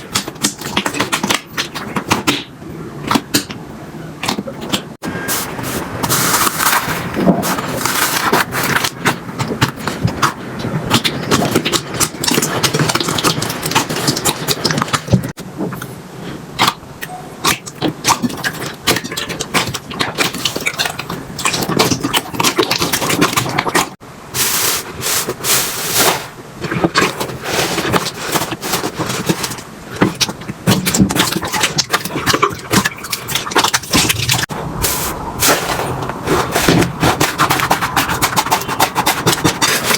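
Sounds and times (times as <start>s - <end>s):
slime squishing and crackling: 0.0s - 3.6s, 4.2s - 15.4s, 16.6s - 39.9s.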